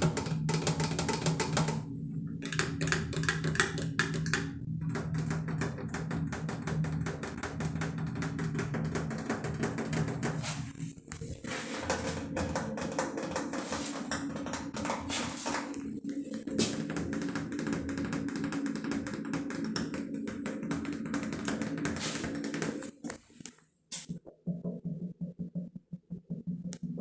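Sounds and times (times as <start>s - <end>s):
rapid tapping on objects: 0.0s - 23.2s.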